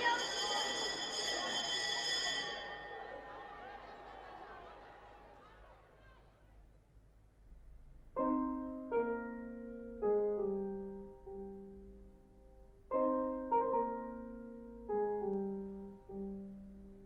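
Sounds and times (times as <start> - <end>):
slow solo piano: 8.1 - 17.0.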